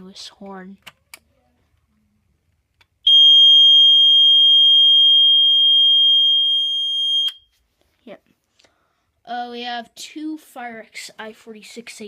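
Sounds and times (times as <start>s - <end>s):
smoke detector alarm tone: 3.1s - 7.5s.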